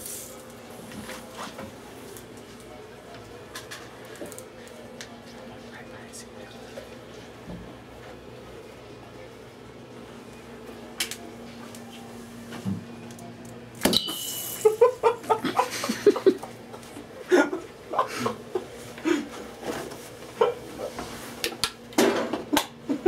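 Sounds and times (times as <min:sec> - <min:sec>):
person chuckling: 0:14.5 - 0:19.4.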